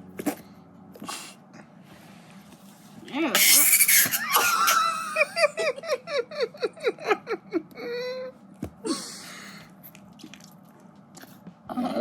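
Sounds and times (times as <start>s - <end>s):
person laughing hard: 4.0s - 8.3s.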